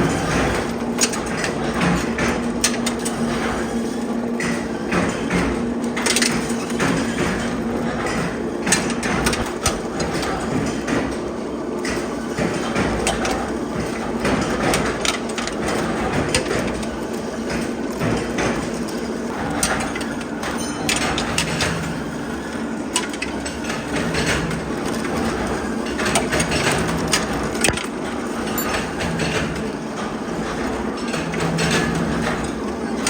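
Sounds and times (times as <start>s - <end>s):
factory machinery running: 0.0s - 33.0s
metallic clanks and knocks: 19.4s - 22.1s.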